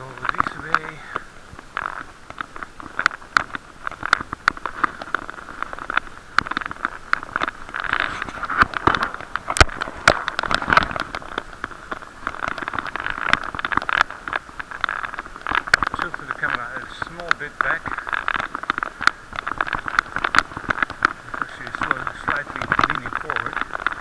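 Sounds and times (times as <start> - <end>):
muffled rushing noise: 0.0 - 1.7, 7.0 - 24.0
bicycle knocks and rattles: 1.6 - 24.0.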